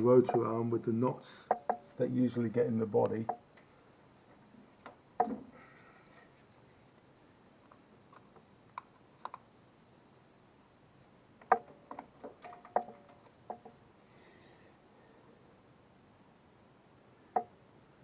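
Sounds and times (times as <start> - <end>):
light clicks and clinks of parts: 11.4 - 13.8.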